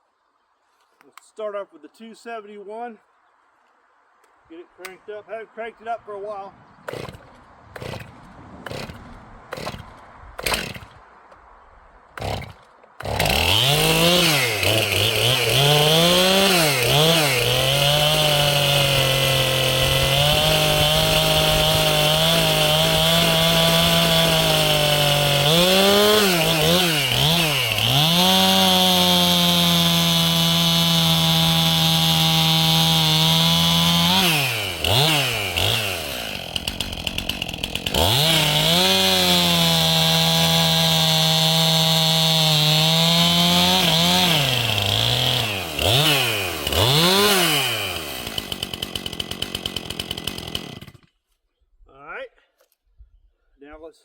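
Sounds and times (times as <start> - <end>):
chainsaw engine revving: 6.9 - 11.0, 12.2 - 51.1
chainsaw pull-starter: 6.9 - 11.0, 12.2 - 51.2.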